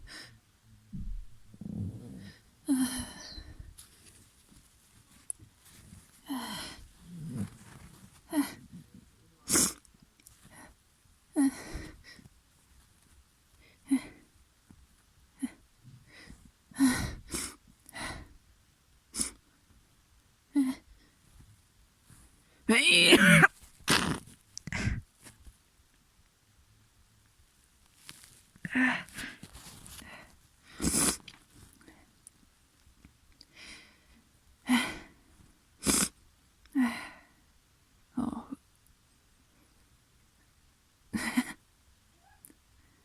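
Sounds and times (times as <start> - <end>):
soft breath: 0.0 - 4.2
person sneezing: 22.7 - 25.0.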